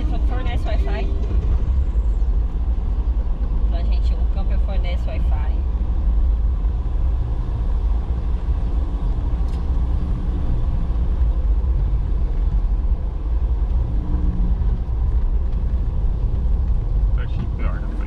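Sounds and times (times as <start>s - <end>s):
car driving over rocky ground: 8.2s - 18.0s.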